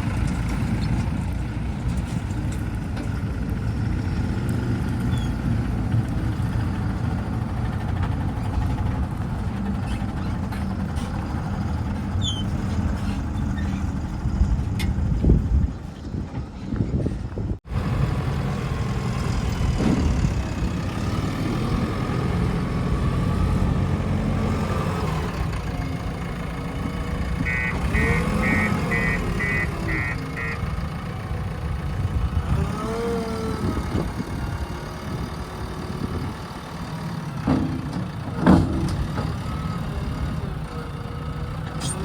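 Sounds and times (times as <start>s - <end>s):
diesel engine running: 0.0s - 42.0s.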